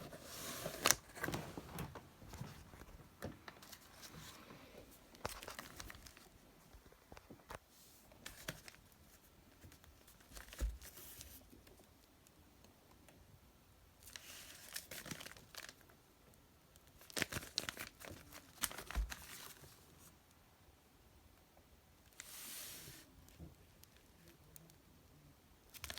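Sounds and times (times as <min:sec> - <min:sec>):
packaging crinkling and rustling: 0:00.0 - 0:04.4, 0:05.1 - 0:07.3, 0:08.2 - 0:11.5, 0:14.0 - 0:15.9, 0:17.0 - 0:20.1.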